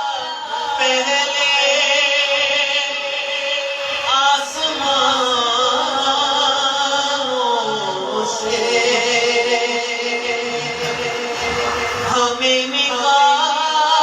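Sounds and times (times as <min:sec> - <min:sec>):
man singing: 0:00.0 - 0:14.0
steady held tones: 0:07.8 - 0:13.1.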